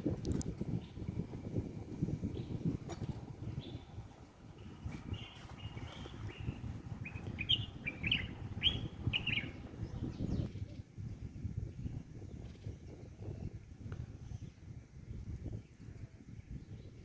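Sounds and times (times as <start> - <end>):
small birds chirping: 0.7 - 10.8.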